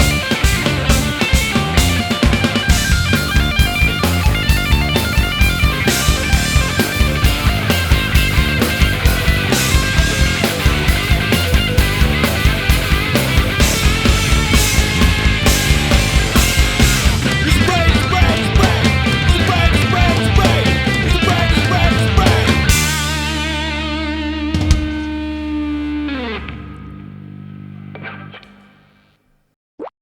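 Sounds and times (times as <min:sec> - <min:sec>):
fast drum beat: 0:00.0 - 0:23.9
distorted rock guitars: 0:00.0 - 0:29.2.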